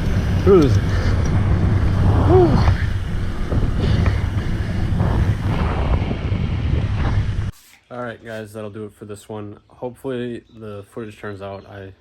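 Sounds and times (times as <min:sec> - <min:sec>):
wind buffeting microphone: 0:00.0 - 0:07.5
bike rolling on dirt trail: 0:00.0 - 0:07.6.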